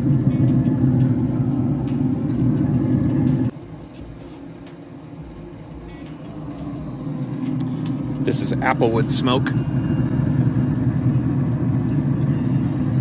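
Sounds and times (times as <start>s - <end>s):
loud motor hum: 0.0s - 13.0s.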